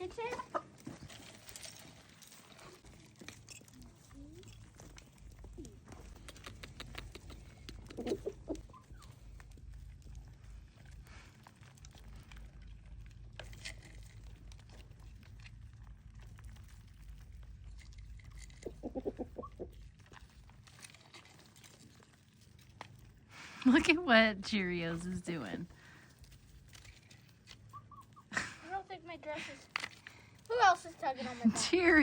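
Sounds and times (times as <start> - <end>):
chickens clucking: 0.3 - 0.8, 6.1 - 9.2, 18.6 - 19.8, 27.7 - 28.3
scattered clicks: 5.9 - 8.6.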